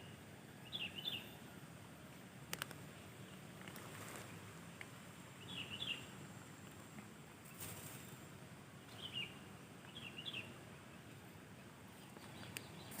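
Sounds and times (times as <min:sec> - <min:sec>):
bird chirping: 0:00.0 - 0:01.4, 0:05.4 - 0:06.3, 0:08.8 - 0:11.2, 0:11.9 - 0:13.0
low outdoor background: 0:00.0 - 0:13.0.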